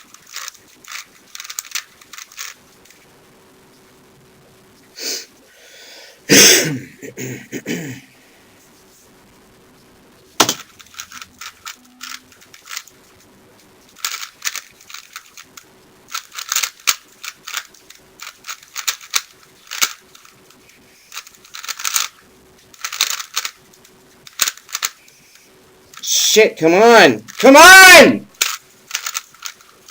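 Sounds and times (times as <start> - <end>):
speed cube clicking: 0.1 - 2.6, 10.4 - 12.9, 14.0 - 20.3, 21.1 - 22.2, 22.8 - 23.6, 24.3 - 25.0, 28.4 - 29.9.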